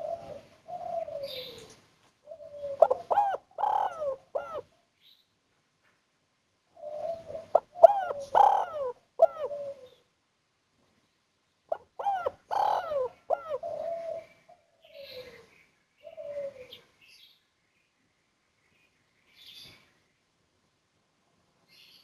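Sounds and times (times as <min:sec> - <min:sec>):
dove cooing: 0:00.0 - 0:04.8, 0:06.7 - 0:10.0, 0:11.7 - 0:16.9.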